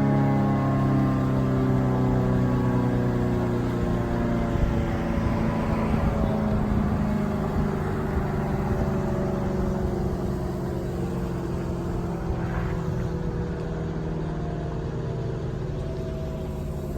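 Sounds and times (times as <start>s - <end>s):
siren winding down: 0.0s - 16.9s
steady low rumble: 3.8s - 16.9s.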